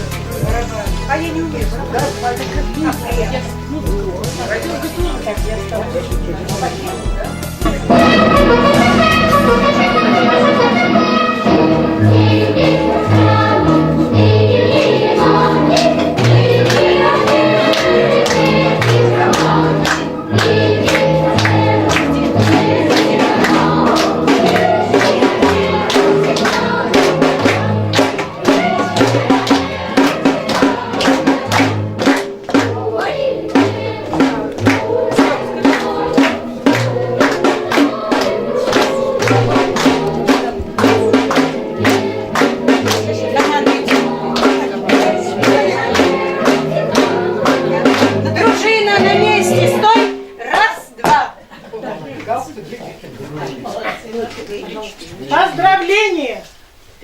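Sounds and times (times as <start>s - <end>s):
choral singing: 0.0s - 50.5s
steady drum beat: 0.0s - 50.5s
bouncing bass line: 7.6s - 14.4s.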